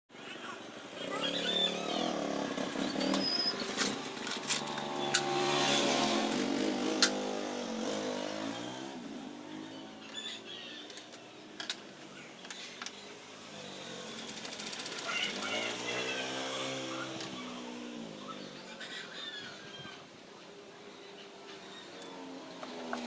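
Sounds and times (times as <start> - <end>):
engine running: 0.8 - 9.9, 12.8 - 18.6.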